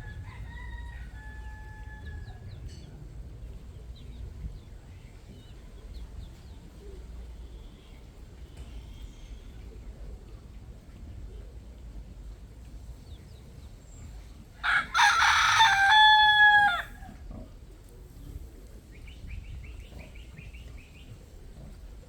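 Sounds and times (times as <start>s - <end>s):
rooster crowing: 0.0s - 2.5s, 14.6s - 17.2s.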